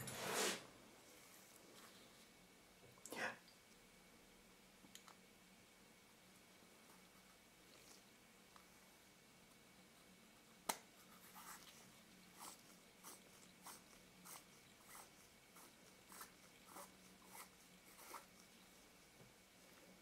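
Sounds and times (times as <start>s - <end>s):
cleaning pad rubbing on lens: 11.2s - 18.4s.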